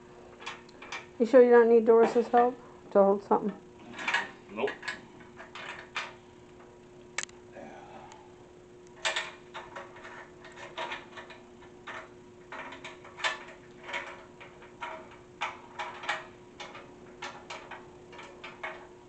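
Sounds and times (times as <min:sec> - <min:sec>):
faint hum: 0:00.0 - 0:19.0
metal parts clicking and knocking: 0:03.9 - 0:06.1, 0:09.0 - 0:18.9.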